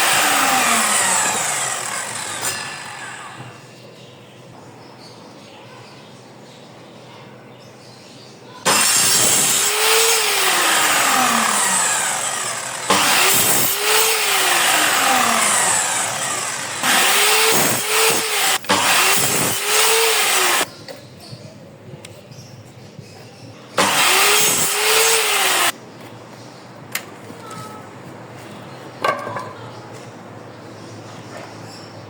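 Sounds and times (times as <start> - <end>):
power saw cutting wood: 0.0 - 3.7, 8.7 - 20.7, 23.8 - 25.8.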